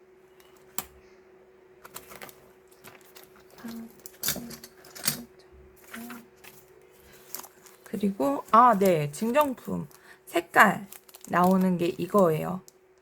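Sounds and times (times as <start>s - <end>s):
stationery and packaging tapping: 7.2s - 10.0s, 10.8s - 12.7s.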